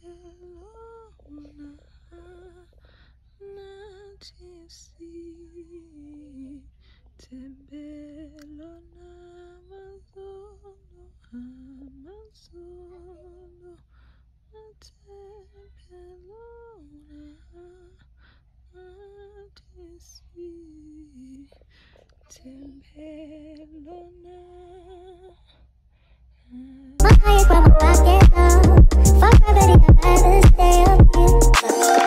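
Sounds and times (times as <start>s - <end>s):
low background hum: 0.0s - 31.3s
woman humming: 26.5s - 32.0s.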